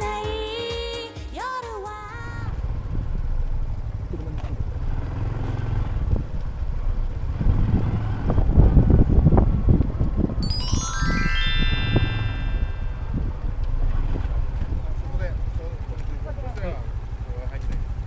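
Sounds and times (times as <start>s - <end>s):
motorcycle engine running: 2.6s - 10.4s, 13.0s - 18.0s
wind rumble on microphone: 7.4s - 10.4s.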